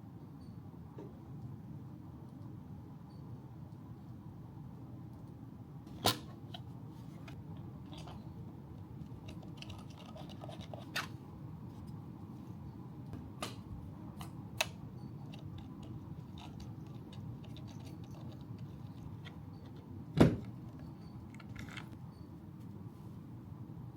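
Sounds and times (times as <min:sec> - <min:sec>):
low steady hum: 0:00.0 - 0:23.9
plastic parts clicking and rattling: 0:09.2 - 0:11.1, 0:14.6 - 0:20.6, 0:21.3 - 0:21.9.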